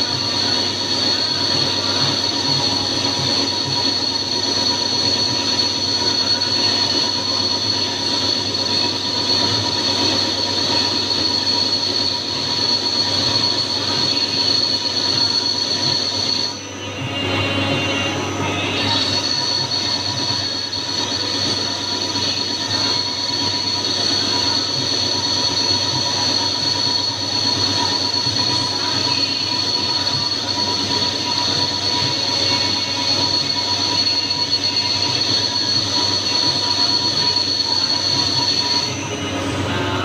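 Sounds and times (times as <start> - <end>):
high-pitched whine: 0.0 - 40.0
lathe running: 0.0 - 40.0.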